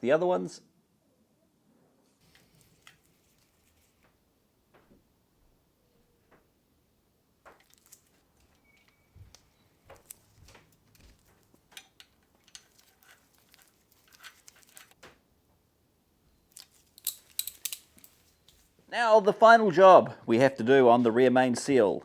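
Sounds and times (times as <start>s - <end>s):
tools and metal parts clicking: 2.2s - 4.0s, 7.6s - 15.0s, 16.5s - 18.6s.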